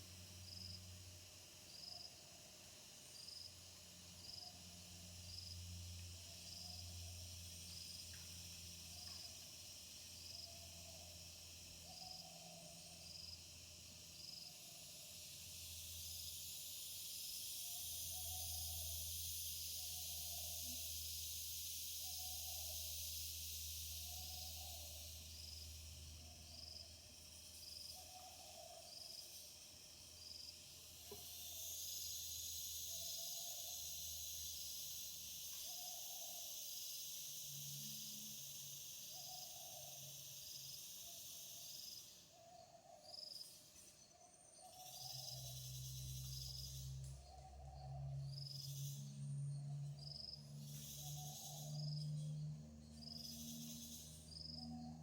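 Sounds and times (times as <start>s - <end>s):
insect buzz: 0.0s - 55.0s.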